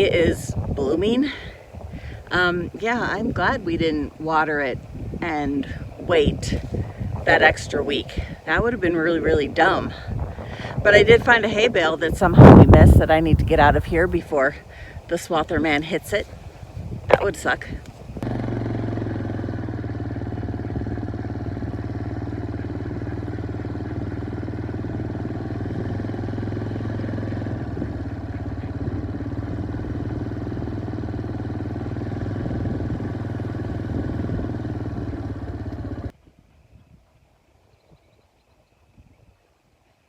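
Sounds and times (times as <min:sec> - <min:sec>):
vehicle engine running: 0:17.1 - 0:36.1.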